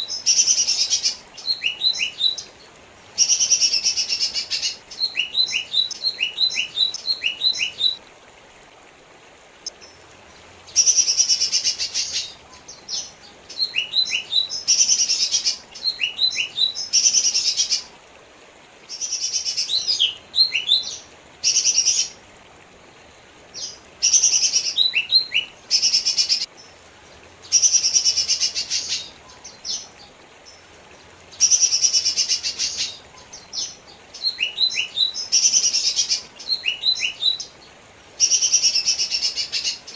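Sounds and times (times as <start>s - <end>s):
bird singing: 0.0s - 2.5s, 3.2s - 8.0s, 10.7s - 17.9s, 31.4s - 37.5s.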